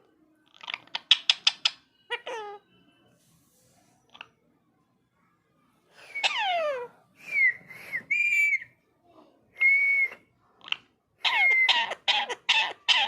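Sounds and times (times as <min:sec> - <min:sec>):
parakeet whistling: 0:06.1 - 0:08.7, 0:11.2 - 0:13.0.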